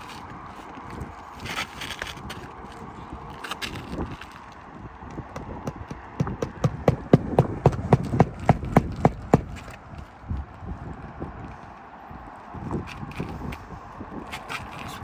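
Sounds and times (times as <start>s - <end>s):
hammer striking roofing nails: 5.1s - 9.7s.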